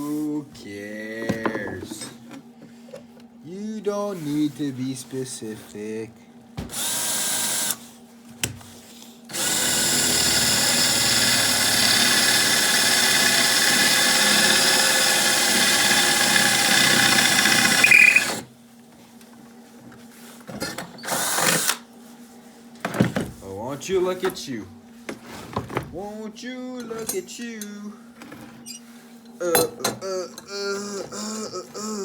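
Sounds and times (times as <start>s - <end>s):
power tool motor whine: 9.3s - 18.5s.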